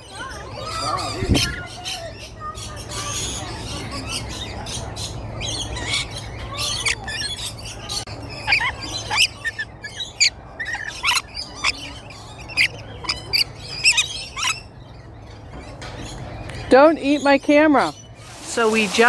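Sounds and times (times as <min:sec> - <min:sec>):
lorikeets screeching: 0:00.0 - 0:19.0.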